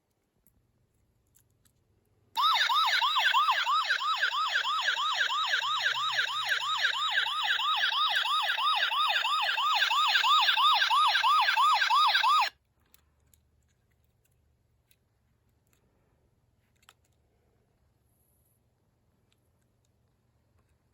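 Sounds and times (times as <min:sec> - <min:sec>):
electronic siren yelp: 0:02.4 - 0:12.5.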